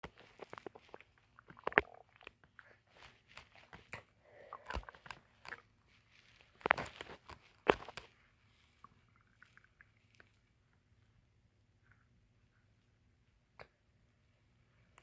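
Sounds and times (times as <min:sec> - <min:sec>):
stomach growling: 0:00.0 - 0:05.7, 0:06.4 - 0:08.1.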